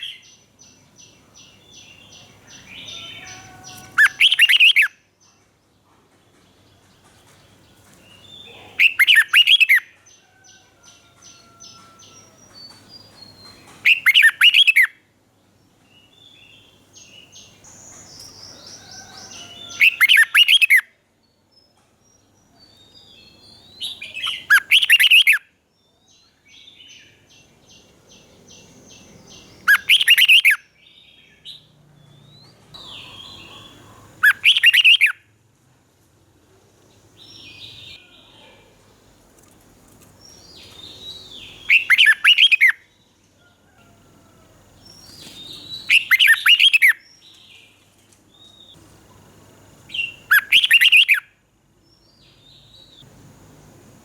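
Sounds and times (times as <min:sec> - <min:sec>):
bird singing loud short phrases: 0:08.3 - 0:09.8, 0:29.4 - 0:30.6, 0:32.8 - 0:35.2, 0:40.5 - 0:42.8, 0:45.0 - 0:47.6, 0:50.0 - 0:51.2
soft bird chirps and ticking: 0:17.0 - 0:20.8, 0:38.6 - 0:43.3.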